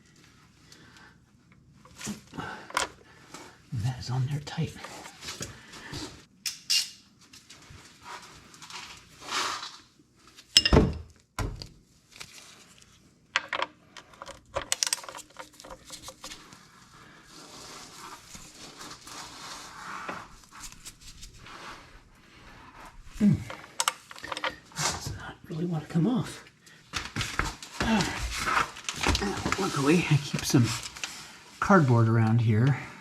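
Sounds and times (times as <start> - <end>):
soft rustling: 15.4 - 23.2.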